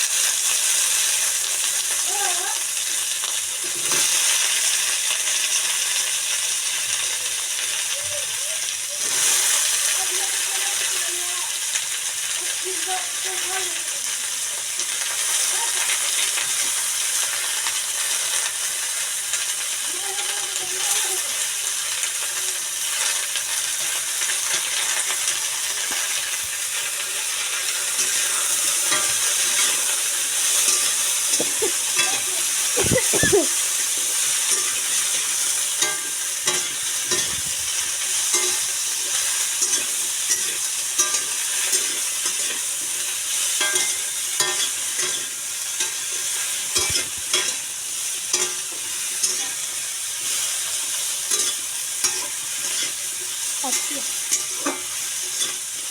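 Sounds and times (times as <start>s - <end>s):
food sizzling in oil: 0.0s - 55.9s
spoon scraping a pan: 23.8s - 55.9s.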